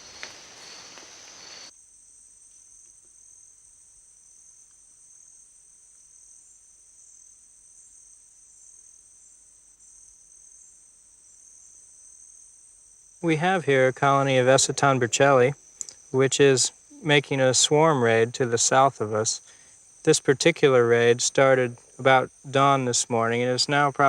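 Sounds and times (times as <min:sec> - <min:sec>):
broad hiss: 0:00.0 - 0:01.7
insects droning: 0:00.0 - 0:24.0.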